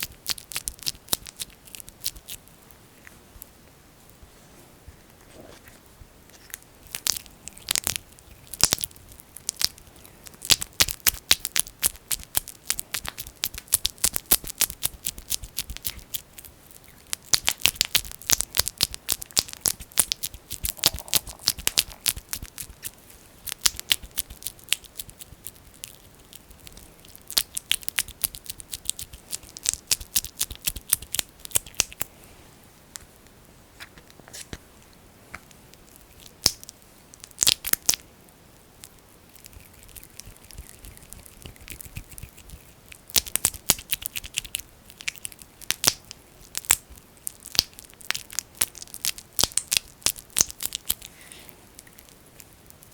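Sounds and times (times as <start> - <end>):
sticky clicks and crackles: 6.3 - 32.0, 39.3 - 51.1.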